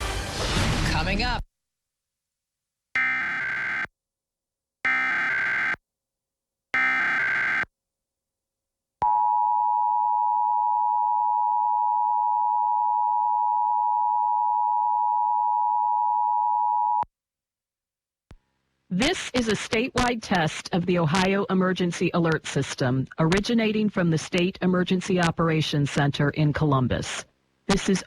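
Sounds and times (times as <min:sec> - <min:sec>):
two-tone attention signal: 0:03.0 - 0:03.9, 0:04.9 - 0:05.8, 0:06.8 - 0:07.6
warbling data tones: 0:03.0 - 0:03.9, 0:04.9 - 0:05.8, 0:06.8 - 0:07.6.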